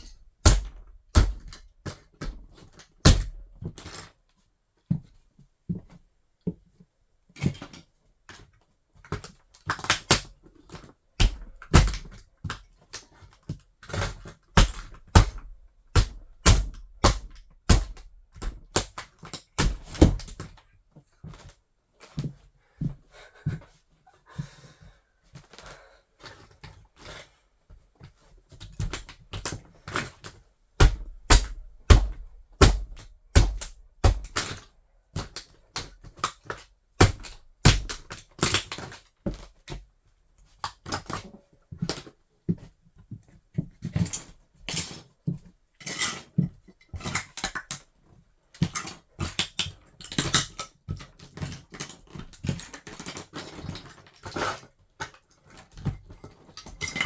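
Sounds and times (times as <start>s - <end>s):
heavy thuds of foot: 0.0s - 1.6s, 14.6s - 18.7s, 30.8s - 34.4s.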